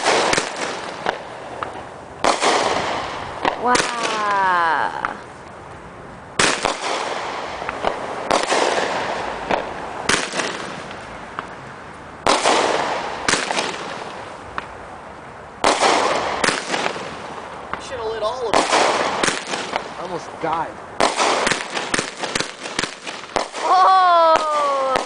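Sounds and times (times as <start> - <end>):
firework bangs: 0.0 - 5.2, 6.4 - 11.6, 12.2 - 14.8, 15.6 - 25.0
crackling hiss: 0.0 - 25.0.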